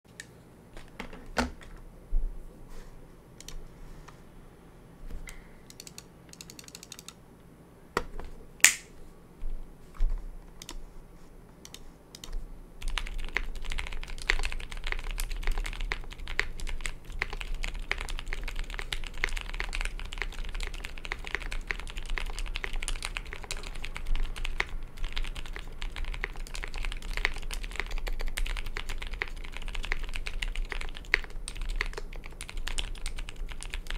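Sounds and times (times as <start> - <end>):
mechanical keyboard typing: 5.7 - 7.2, 11.7 - 33.9.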